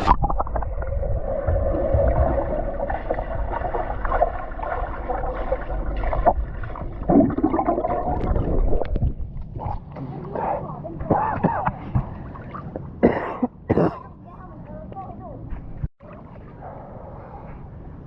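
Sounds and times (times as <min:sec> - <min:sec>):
underwater gurgling and bubbling: 0:00.0 - 0:11.3.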